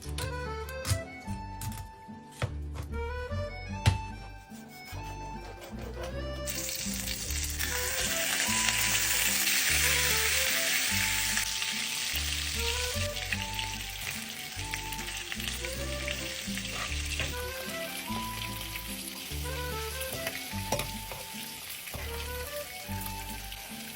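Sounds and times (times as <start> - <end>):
meat sizzling in a hot pan: 6.5 - 23.9.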